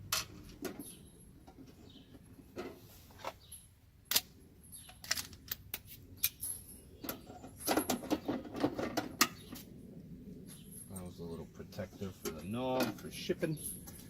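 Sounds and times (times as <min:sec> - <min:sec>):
small hard parts clicking and clattering: 0:02.6 - 0:09.5.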